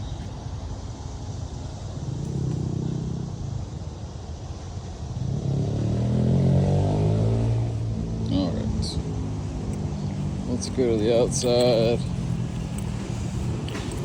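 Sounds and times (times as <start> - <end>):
engine speeding up: 5.0 - 14.0.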